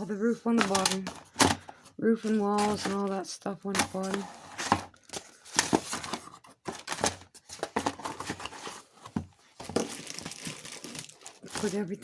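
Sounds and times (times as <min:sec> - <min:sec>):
plastic packaging crinkling: 0:09.6 - 0:12.0.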